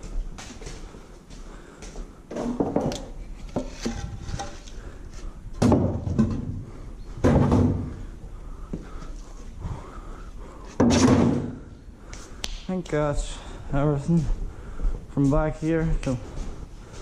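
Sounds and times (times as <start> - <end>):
steady low hum: 0.0 - 17.0
objects banging and rattling: 2.3 - 4.8, 5.6 - 8.0, 10.7 - 11.7.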